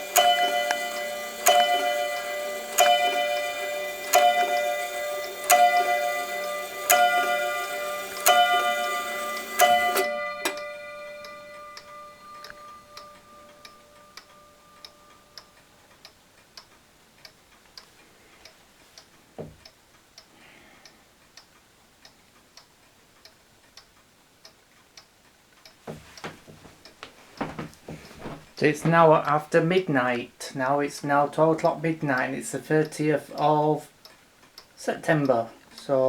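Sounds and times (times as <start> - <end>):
clock bell ringing: 0.0 - 15.6
wall clock ticking: 0.0 - 36.0.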